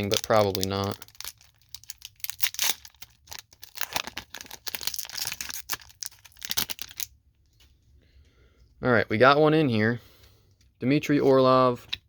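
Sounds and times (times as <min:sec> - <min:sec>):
wrapper tearing and crinkling: 0:00.0 - 0:07.1.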